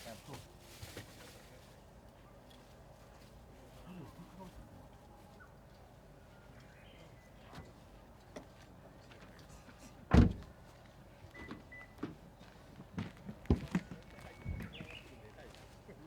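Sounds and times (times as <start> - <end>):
loud short thump: 10.1 - 10.5.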